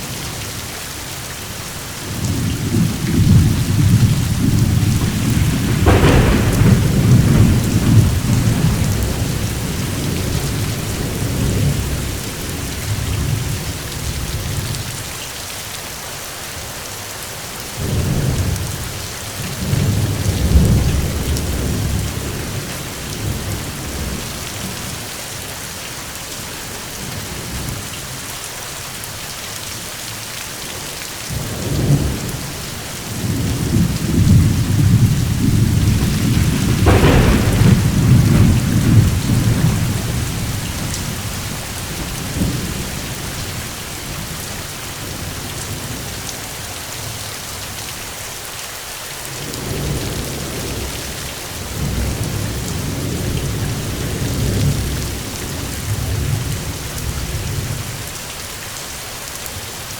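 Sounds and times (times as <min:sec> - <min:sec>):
steady rain falling: 0:00.0 - 0:59.9
rolling thunder: 0:02.0 - 0:14.8, 0:17.8 - 0:25.0, 0:31.3 - 0:46.2, 0:49.4 - 0:58.0.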